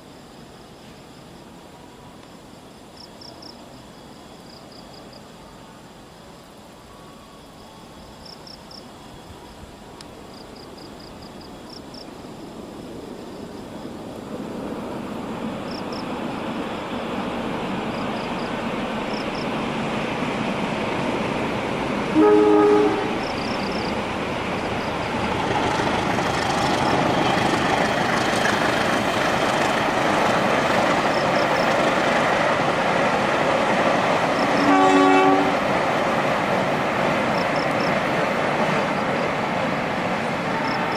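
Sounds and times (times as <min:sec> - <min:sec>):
train rumbling past: 0:00.0 - 0:40.9
locomotive horn blasts: 0:22.1 - 0:23.2, 0:34.6 - 0:35.6.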